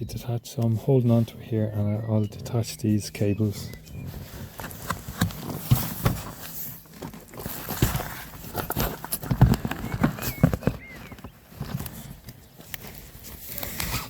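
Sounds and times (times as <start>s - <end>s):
rustling: 3.2s - 14.0s.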